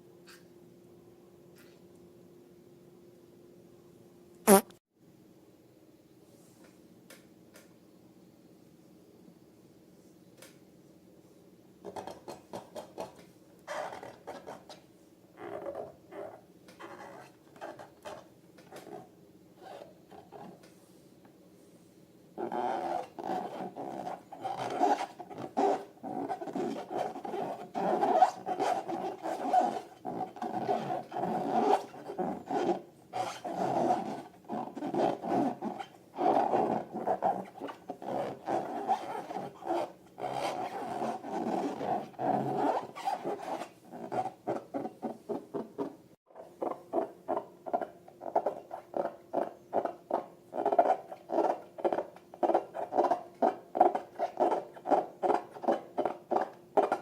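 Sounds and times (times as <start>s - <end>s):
balloons squeaking when rubbed: 4.5s - 4.7s, 15.4s - 18.2s, 22.4s - 46.0s, 46.6s - 57.0s.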